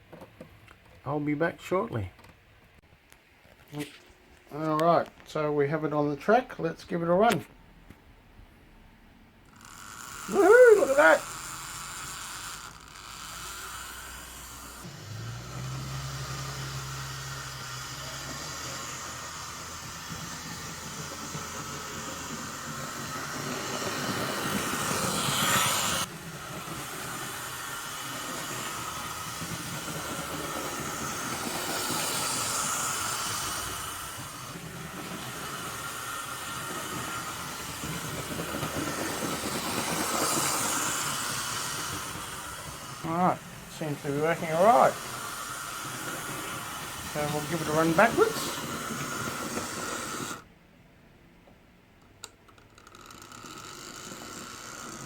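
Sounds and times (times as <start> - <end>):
model train motor whirring: 9.4 - 50.5, 52.5 - 55.0.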